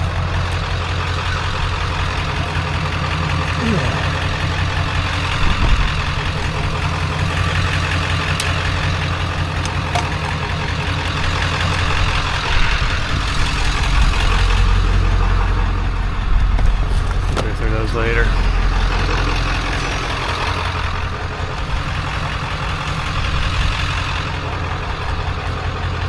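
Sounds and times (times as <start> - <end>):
vehicle engine running: 0.0 - 26.0.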